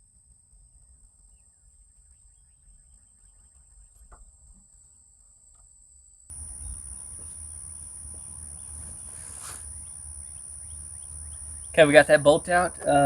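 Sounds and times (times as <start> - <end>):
high-pitched insect chorus: 6.3 - 13.0.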